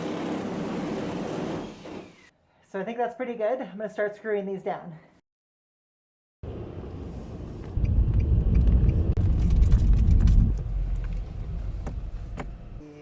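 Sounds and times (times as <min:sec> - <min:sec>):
low rumble: 0:06.5 - 0:12.8.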